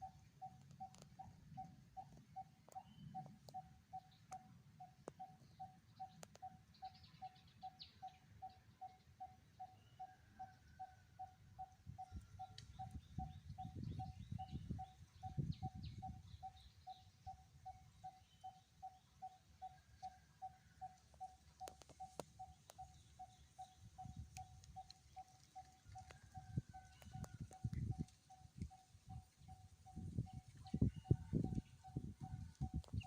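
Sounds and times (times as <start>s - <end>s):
faint bird chirps: 0.0s - 33.0s
wind rumble on microphone: 11.8s - 16.5s, 25.8s - 33.0s.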